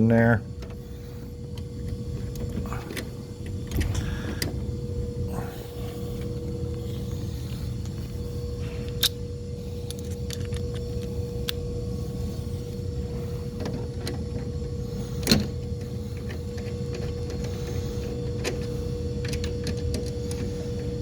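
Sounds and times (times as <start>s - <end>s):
low machinery hum: 0.0s - 21.0s.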